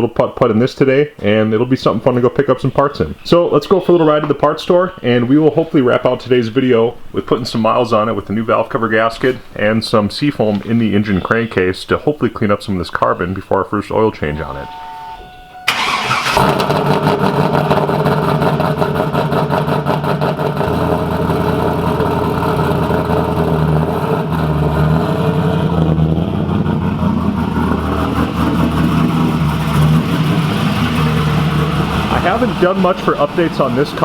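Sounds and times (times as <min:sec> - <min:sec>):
car engine idling loudly: 0:15.7 - 0:34.0
car engine starting: 0:15.7 - 0:34.0.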